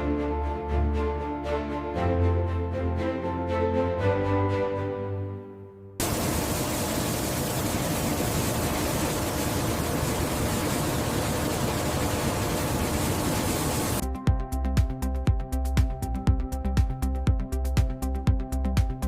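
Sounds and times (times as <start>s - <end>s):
steady rushing hiss: 6.0s - 14.0s.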